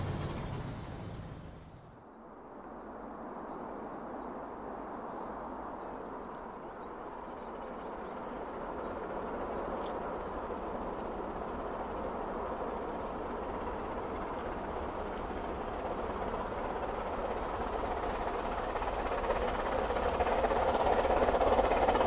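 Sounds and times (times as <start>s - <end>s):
steam train rumble: 0.0s - 2.0s, 7.2s - 22.0s.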